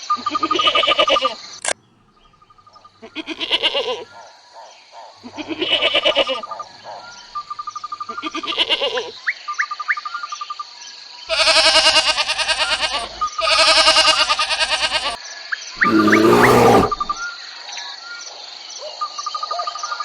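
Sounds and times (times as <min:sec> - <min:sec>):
goat bleating: 0:11.3 - 0:15.1
insects chirping: 0:15.8 - 0:17.2.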